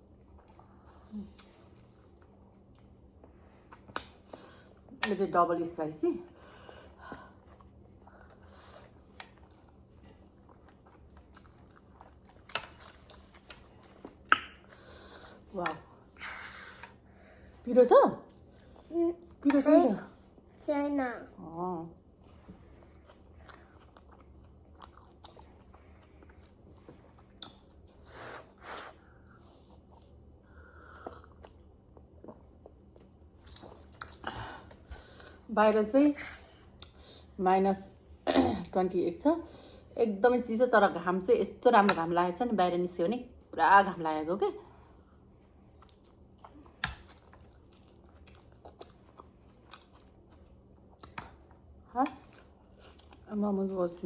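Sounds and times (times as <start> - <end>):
people chewing and biting: 6.8 - 15.4, 22.2 - 35.4, 45.2 - 53.3.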